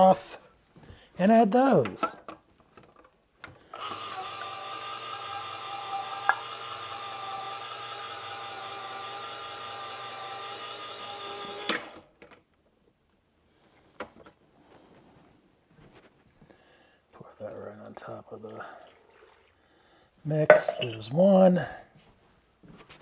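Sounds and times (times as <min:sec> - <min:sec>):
electric can opener running: 0:03.5 - 0:12.2
can opener click: 0:03.7 - 0:12.1.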